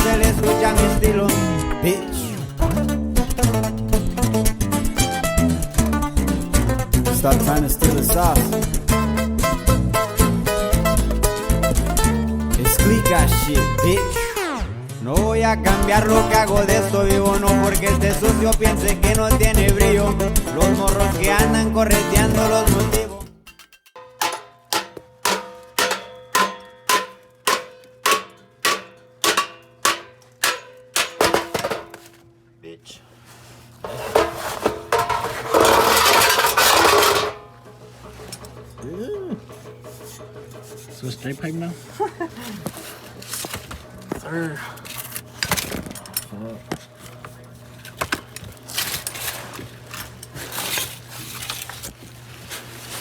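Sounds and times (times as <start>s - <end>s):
hammer striking metal pipe: 23.4s - 32.1s, 33.9s - 41.1s
metal tools clinking: 23.4s - 32.2s, 34.0s - 37.5s.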